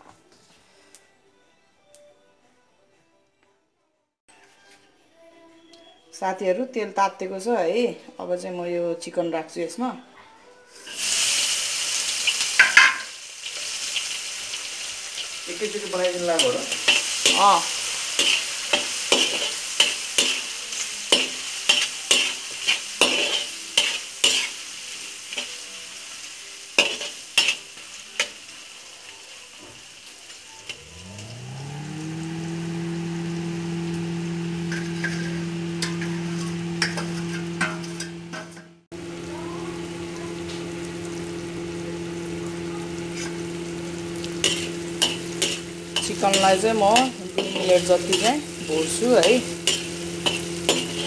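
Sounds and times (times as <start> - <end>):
chicken sizzling in hot oil: 10.7 - 51.0
motor humming: 30.6 - 51.0
metal spatula scraping pan: 34.6 - 38.8, 43.0 - 51.0.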